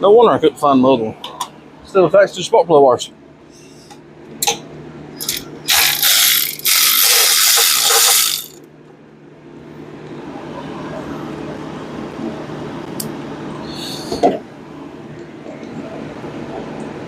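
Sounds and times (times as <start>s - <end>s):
ratchet clicking: 5.2s - 8.6s.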